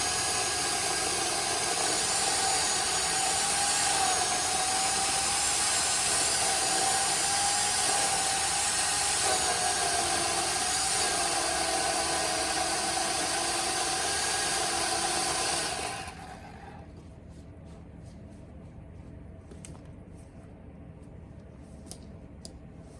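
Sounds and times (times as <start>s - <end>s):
electric chainsaw whining: 0.0s - 16.7s.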